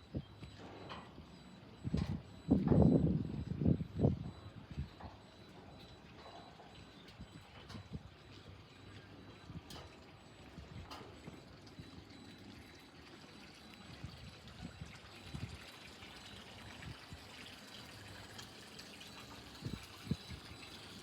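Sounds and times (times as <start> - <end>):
water sloshing against hull: 0.0 - 21.0
soft low knocks: 1.8 - 8.0.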